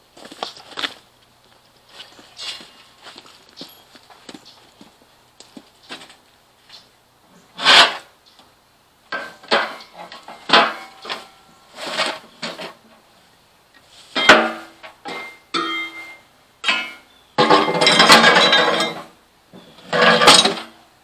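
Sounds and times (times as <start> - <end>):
hard objects knocking and clanking: 16.6 - 19.1.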